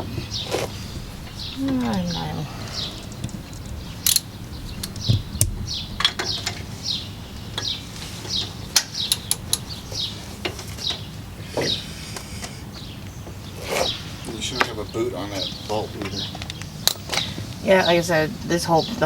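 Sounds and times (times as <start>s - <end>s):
small birds chirping: 0.0s - 19.0s
metal tools clinking: 0.5s - 5.1s, 8.7s - 10.8s.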